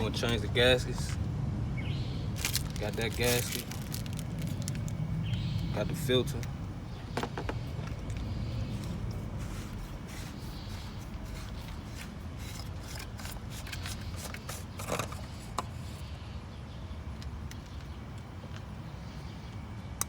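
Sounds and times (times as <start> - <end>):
steady low rumble: 0.0 - 14.2.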